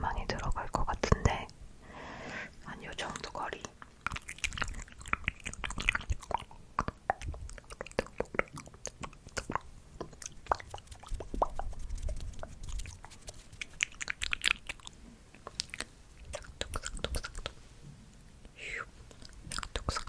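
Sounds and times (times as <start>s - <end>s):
wet mouth clicks and smacks: 3.2s - 17.6s, 19.1s - 20.0s.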